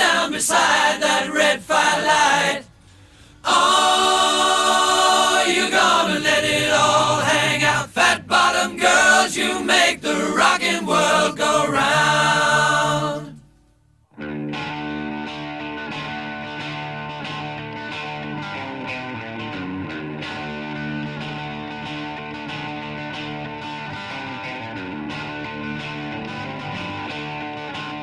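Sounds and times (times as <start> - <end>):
several voices singing together: 0.0 - 2.7, 3.4 - 13.4.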